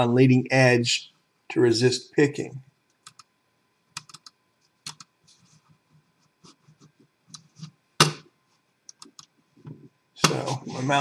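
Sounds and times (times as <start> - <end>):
computer mouse and key clicks: 2.9 - 3.3, 4.0 - 5.1, 8.9 - 9.3.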